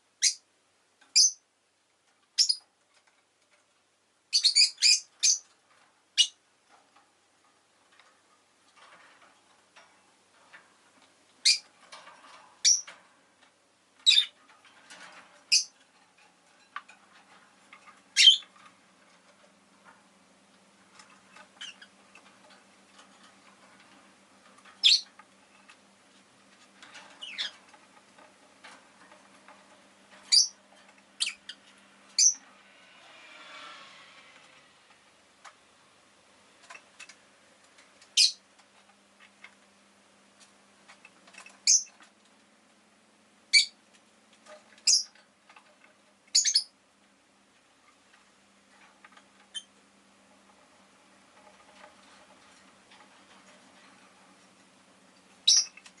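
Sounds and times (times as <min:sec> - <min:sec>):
bird giving high chirps: 0:04.3 - 0:05.4, 0:24.8 - 0:25.0, 0:32.2 - 0:32.4, 0:55.5 - 0:55.7.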